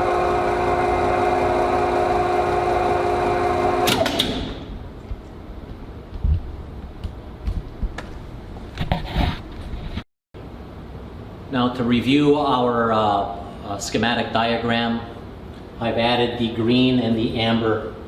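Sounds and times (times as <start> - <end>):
electric motor humming: 0.0 - 4.7.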